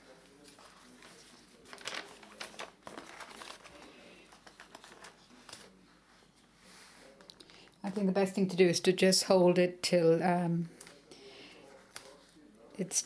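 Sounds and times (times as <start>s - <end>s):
paper bags rustling: 0.0s - 5.8s.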